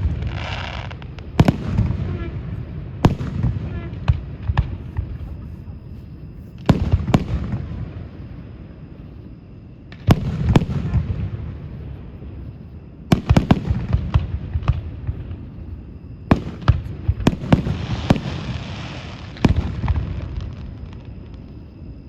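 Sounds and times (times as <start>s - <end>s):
fireworks hissing crackle: 0.0s - 7.6s, 16.4s - 21.6s
fireworks booming: 0.0s - 8.6s, 9.8s - 21.6s.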